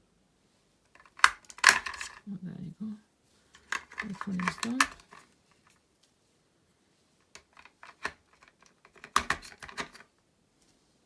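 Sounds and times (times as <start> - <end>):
plastic clicks and taps: 3.6 - 5.2, 7.4 - 10.0.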